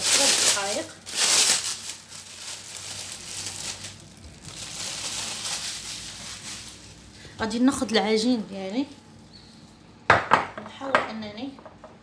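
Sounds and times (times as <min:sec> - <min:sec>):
plastic wrap crinkling: 0:00.0 - 0:09.2.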